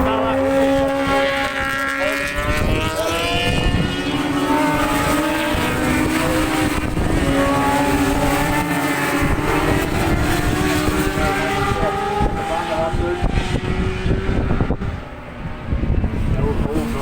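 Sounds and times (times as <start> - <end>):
racing motorcycles passing: 0.0 - 17.0.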